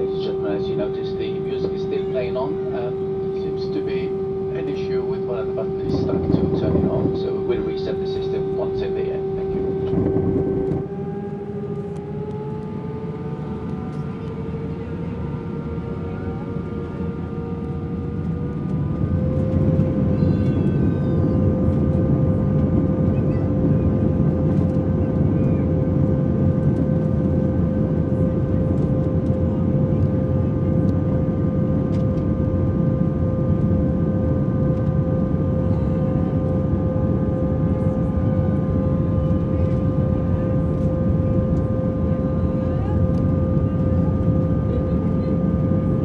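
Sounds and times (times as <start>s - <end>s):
jet engines whining and rumbling: 0.0s - 46.0s.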